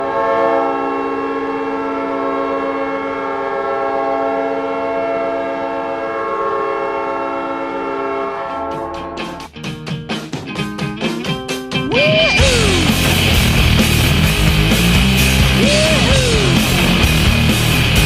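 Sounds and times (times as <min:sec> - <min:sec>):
multi-tone air horn blast: 0:00.0 - 0:09.5.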